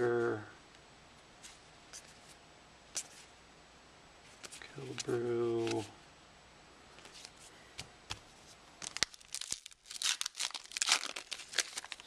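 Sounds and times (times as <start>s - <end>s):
card pack crinkling and tearing: 8.8s - 12.0s.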